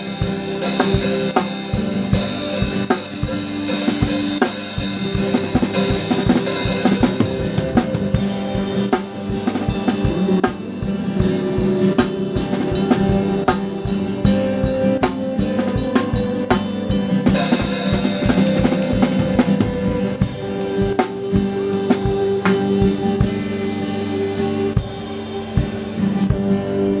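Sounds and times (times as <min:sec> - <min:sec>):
band holding chords: 0:00.0 - 0:27.0
drum kit playing steady beat: 0:00.0 - 0:27.0
cymbal crash: 0:17.3 - 0:26.0.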